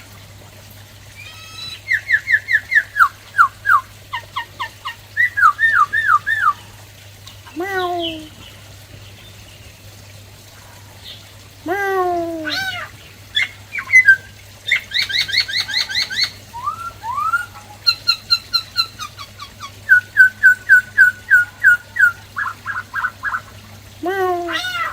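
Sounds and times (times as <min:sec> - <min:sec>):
laughingthrush singing: 0:11.7 - 0:24.9.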